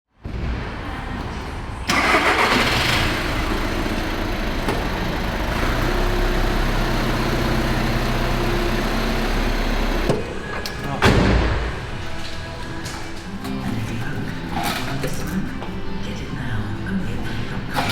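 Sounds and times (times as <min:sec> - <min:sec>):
car engine starting and idling: 0:01.8 - 0:13.2.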